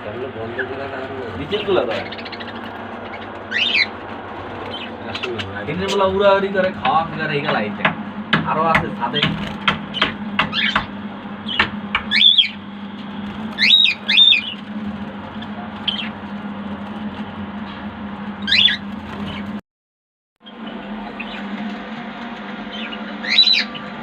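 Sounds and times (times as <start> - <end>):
birds squawking: 0.0 - 7.8, 9.1 - 16.4, 18.3 - 19.6, 20.4 - 21.7, 22.6 - 24.0
steady low hum: 0.0 - 19.6, 20.4 - 24.0.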